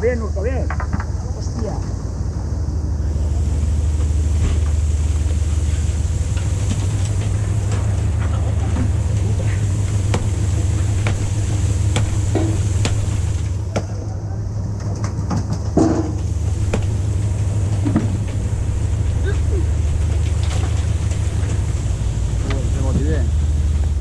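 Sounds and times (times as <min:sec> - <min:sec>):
boat engine deep hum: 0:00.0 - 0:24.0
sharp clicks and knocks: 0:03.1 - 0:13.9.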